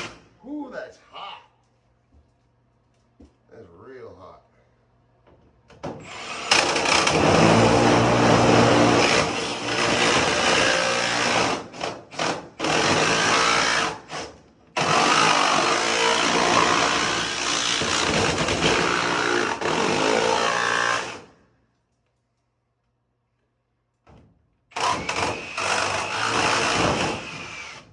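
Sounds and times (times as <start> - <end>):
jigsaw cutting sheet metal: 6.0 - 21.3, 24.8 - 27.9.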